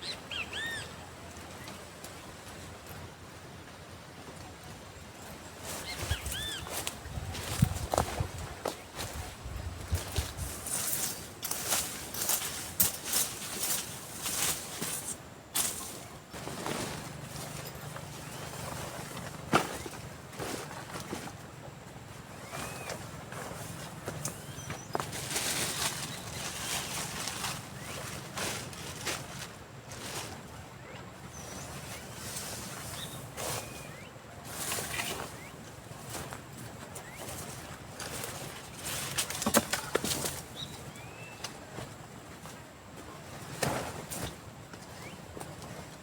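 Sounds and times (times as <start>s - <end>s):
faint bird chirps: 0.0s - 2.3s, 5.0s - 7.6s, 30.8s - 35.7s
dry leaves and twigs crunching: 5.5s - 46.0s.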